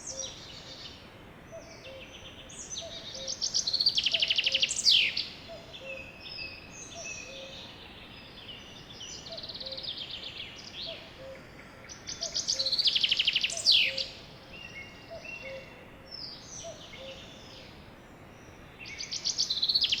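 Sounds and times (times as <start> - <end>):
birds chirping and whistling: 2.6 - 7.8, 9.0 - 17.6.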